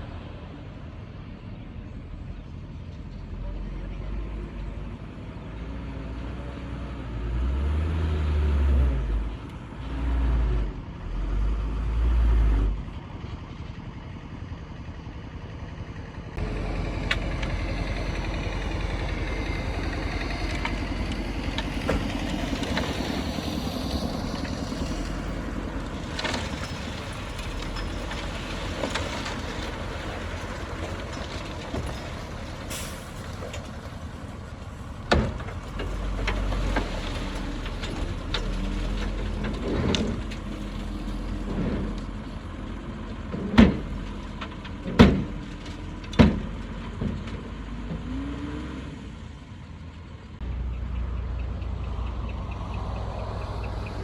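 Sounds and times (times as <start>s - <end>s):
heavy diesel machinery running: 9.0s - 54.0s
knocks and clatter: 20.3s - 34.0s, 35.0s - 42.2s, 43.2s - 48.1s.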